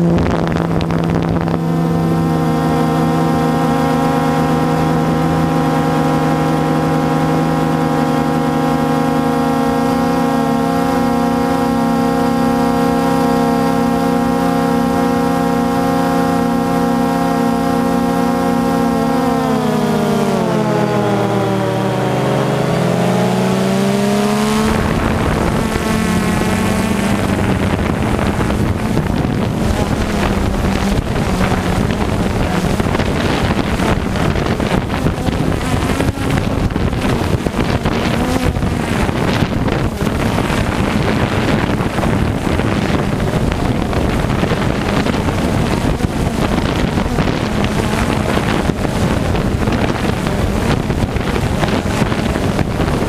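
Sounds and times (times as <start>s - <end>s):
pitched tone dipping and rising: 0.0s - 52.9s
wind buffeting microphone: 0.0s - 53.0s.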